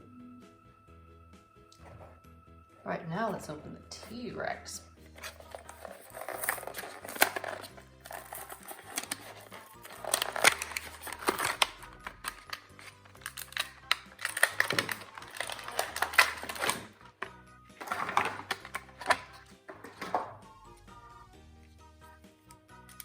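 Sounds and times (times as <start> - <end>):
background music: 0.0 - 23.0
packaging crinkling and tearing: 5.1 - 20.2.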